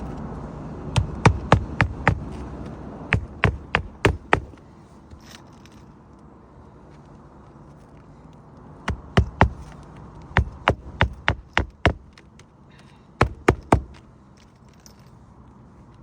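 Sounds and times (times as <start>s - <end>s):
hand hammer striking: 1.0s - 2.5s, 3.1s - 4.6s, 8.9s - 9.8s, 10.4s - 12.2s, 13.2s - 14.0s.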